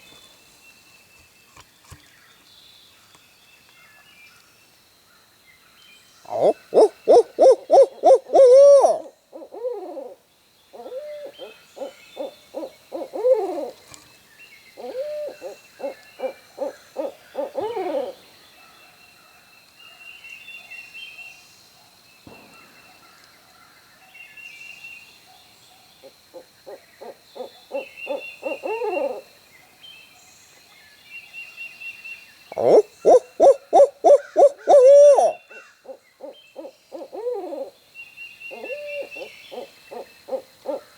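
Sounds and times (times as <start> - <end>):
owl hooting: 6.3 - 10.2, 10.8 - 13.8, 14.8 - 18.2, 26.3 - 29.3, 32.5 - 37.8, 38.5 - 40.9.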